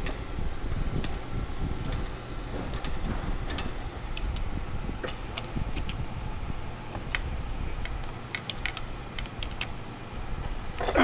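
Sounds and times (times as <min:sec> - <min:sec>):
low background hum: 0:00.0 - 0:11.0
metallic clicks of hand tools: 0:07.1 - 0:09.7.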